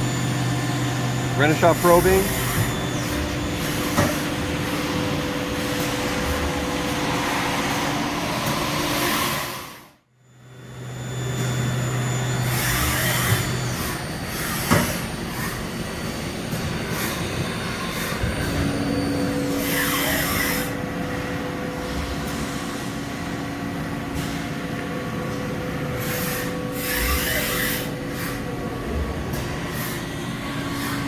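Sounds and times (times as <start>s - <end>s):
machine noise: 0.0s - 31.0s
machine whine: 0.0s - 31.0s.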